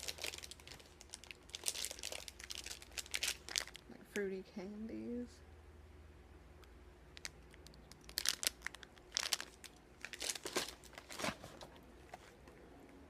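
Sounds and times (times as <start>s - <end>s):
plastic wrappers crinkling: 0.0s - 3.9s, 7.2s - 12.4s.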